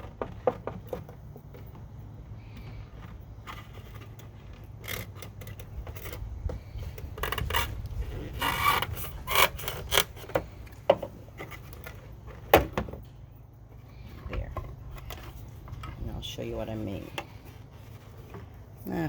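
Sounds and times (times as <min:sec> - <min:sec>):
plastic housing scraping: 0:00.0 - 0:18.8.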